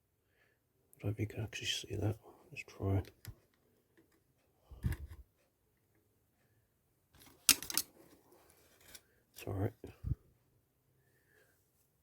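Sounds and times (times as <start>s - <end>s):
sharp plastic and metal clicks: 7.2s - 7.9s.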